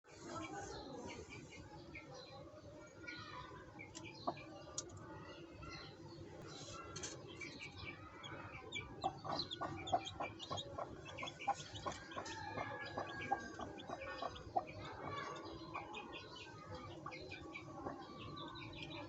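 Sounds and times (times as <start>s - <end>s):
chicks peeping: 3.6s - 19.0s
chicken clucking: 8.6s - 19.0s.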